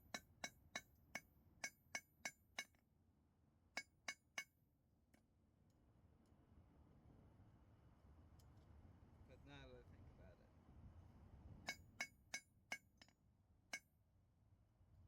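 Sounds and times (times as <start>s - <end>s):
hammer striking metal on anvil: 0.0s - 2.8s.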